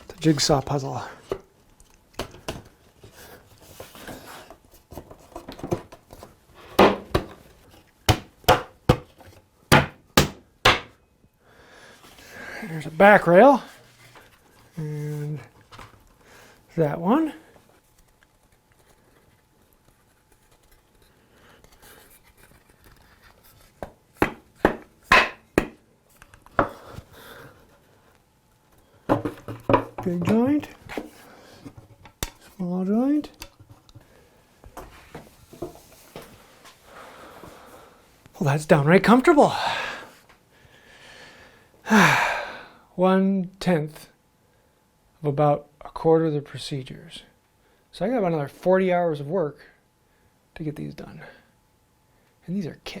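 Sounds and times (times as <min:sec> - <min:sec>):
handling and rustling: 0:00.0 - 0:08.0
wooden chair parts knocking: 0:06.8 - 0:07.4, 0:08.1 - 0:11.0, 0:24.2 - 0:25.8
sharp knocks on wood: 0:08.1 - 0:09.1, 0:09.7 - 0:10.9.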